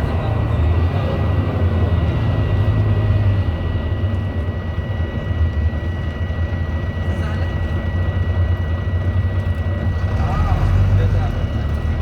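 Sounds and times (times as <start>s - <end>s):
bus engine droning: 0.0s - 12.0s
constant high-pitched beep: 2.2s - 10.2s.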